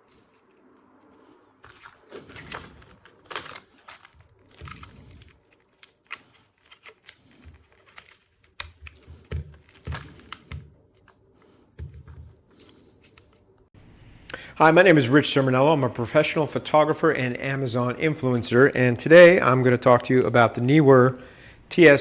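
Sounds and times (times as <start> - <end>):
objects handled clicking and rustling: 0.0 - 13.7.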